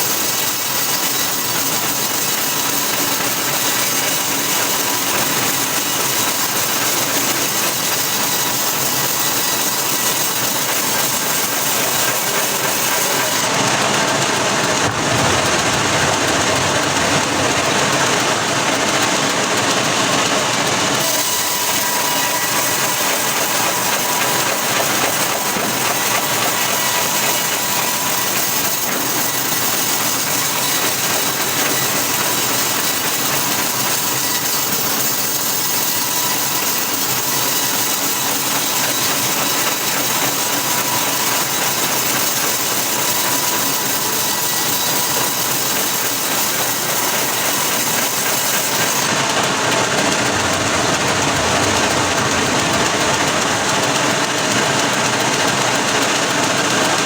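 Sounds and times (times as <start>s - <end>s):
engine-driven machine running: 9.7s - 21.8s, 47.4s - 57.0s.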